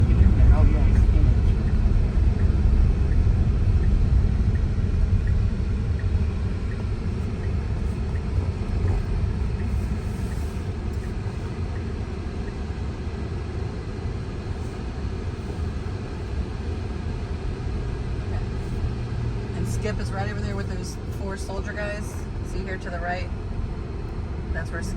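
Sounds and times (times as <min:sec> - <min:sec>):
road and tyre rumble: 0:00.0 - 0:24.9
faint regular ticking: 0:00.1 - 0:12.6.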